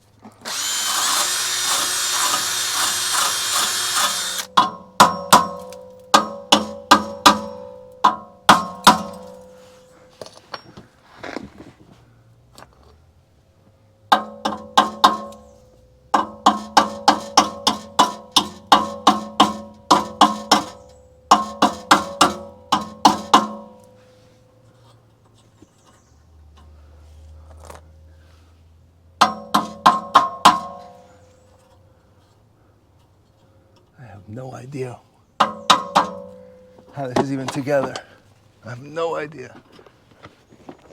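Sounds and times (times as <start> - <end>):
hammer striking metal pipe: 3.5 - 9.6, 16.1 - 23.9, 29.2 - 30.9, 35.4 - 36.8.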